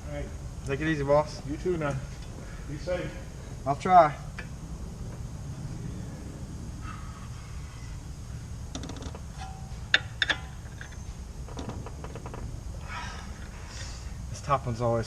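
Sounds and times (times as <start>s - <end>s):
low steady rumble: 0.0s - 15.0s
metallic clinks of steel parts: 9.4s - 11.1s.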